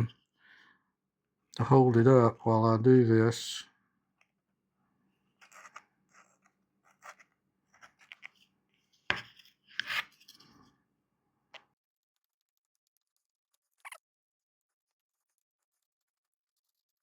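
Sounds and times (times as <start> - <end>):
hands clicking and scraping: 5.4 - 8.4, 9.1 - 10.5.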